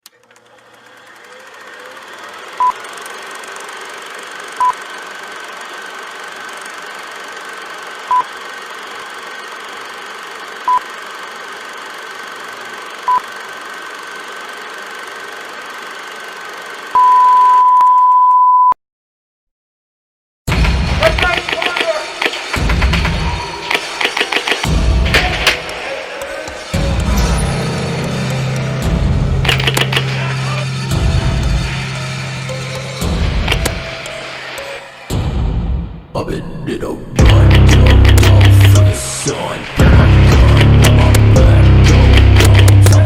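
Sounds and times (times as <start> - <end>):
heart monitor beeps: 17.0 - 18.8
steady hum: 20.5 - 36.1, 37.2 - 43.0.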